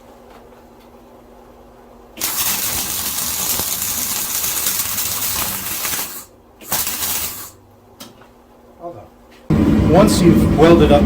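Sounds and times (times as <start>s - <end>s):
arc welder crackling hiss: 2.2s - 7.6s.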